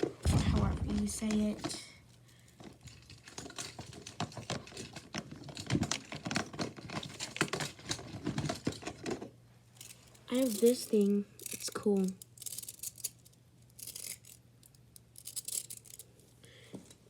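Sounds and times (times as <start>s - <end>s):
plastic toys clicking and clattering: 0.0s - 16.1s.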